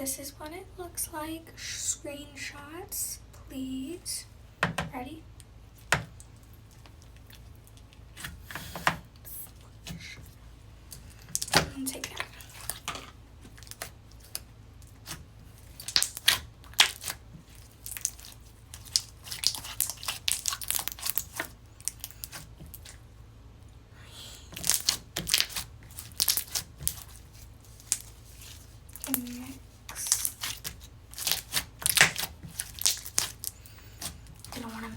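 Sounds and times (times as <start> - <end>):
slime squished by hand: 13.5 - 23.0, 24.4 - 34.9.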